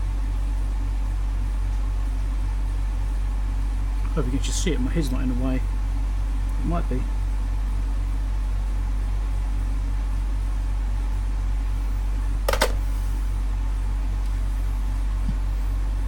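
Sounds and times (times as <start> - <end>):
low electrical hum: 0.0 - 16.0
sharp click: 12.5 - 12.8.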